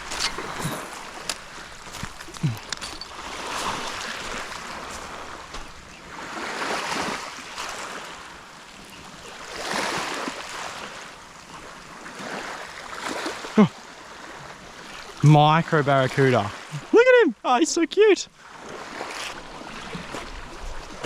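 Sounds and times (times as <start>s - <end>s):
small waves washing against rocks: 0.0s - 17.0s, 18.4s - 21.0s.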